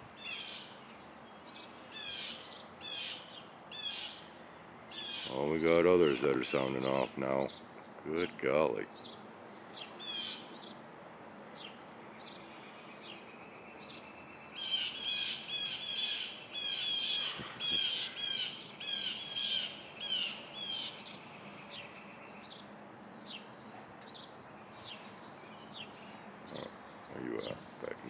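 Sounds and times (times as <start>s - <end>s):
jays squawking: 14.6s - 21.0s, 26.5s - 28.0s.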